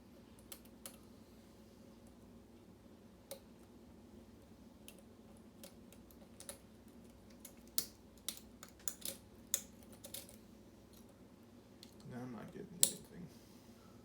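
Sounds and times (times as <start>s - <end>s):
lock picks clicking in lock: 7.3s - 11.0s.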